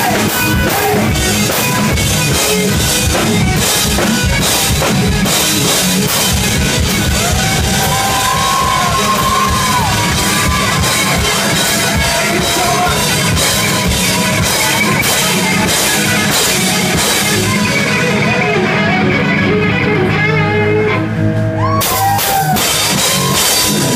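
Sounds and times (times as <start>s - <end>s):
drums and cymbals: 0.0s - 18.2s, 21.7s - 23.9s
electric guitar: 0.0s - 23.9s.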